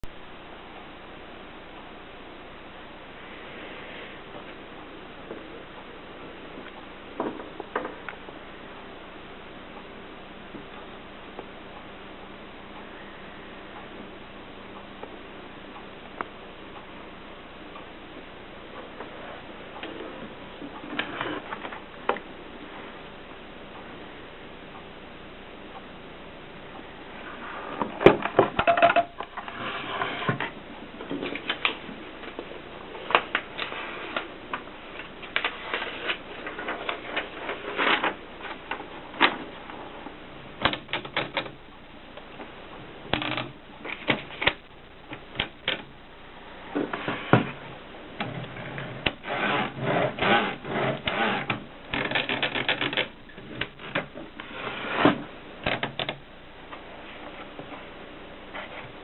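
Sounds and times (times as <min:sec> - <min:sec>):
manual typewriter typing: 0:52.0 - 0:53.1.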